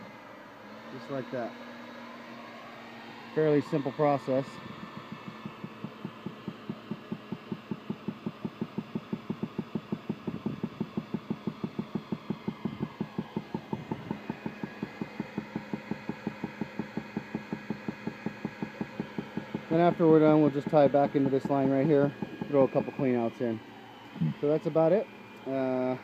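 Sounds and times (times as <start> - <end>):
hydraulic machine running: 0.0 - 26.0
rapid regular knocking: 4.4 - 23.3.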